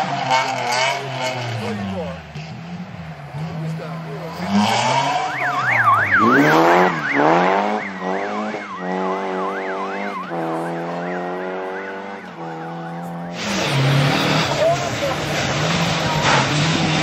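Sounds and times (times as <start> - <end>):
car engine revving: 0.0 - 17.0
vehicle siren wailing: 4.6 - 13.3.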